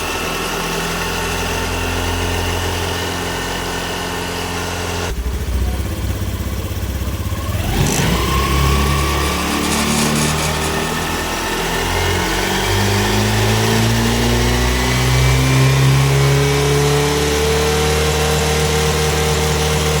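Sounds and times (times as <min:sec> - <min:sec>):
scooter engine running: 0:00.0 - 0:20.0
thin gearbox whine: 0:08.4 - 0:11.5.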